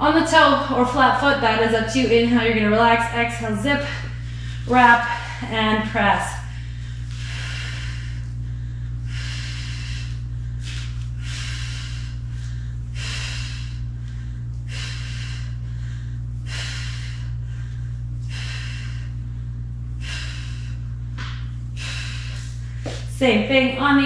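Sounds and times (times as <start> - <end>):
steady low hum: 0.0 - 24.0
woman breathing hard: 3.7 - 5.5, 6.2 - 23.1.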